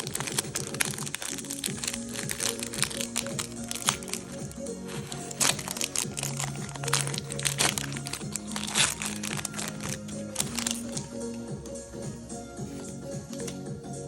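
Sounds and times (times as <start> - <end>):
foil wrapper crinkling: 0.0 - 11.0
background music: 0.0 - 14.0.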